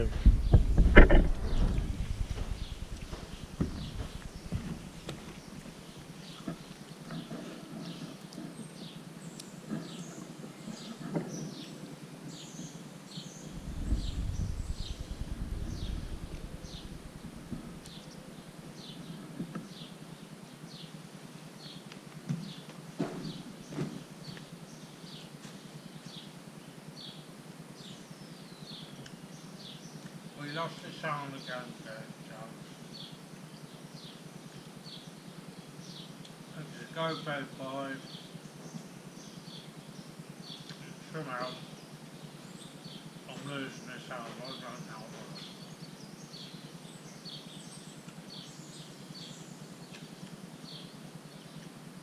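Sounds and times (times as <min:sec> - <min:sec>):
soft thumps: 0:00.0 - 0:05.4
bird chirping: 0:00.0 - 0:19.9
low background hum: 0:00.0 - 0:52.0.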